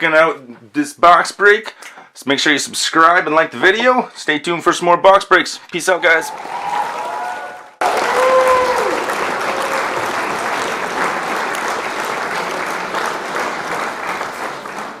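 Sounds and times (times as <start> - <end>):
applause: 6.1 - 15.0.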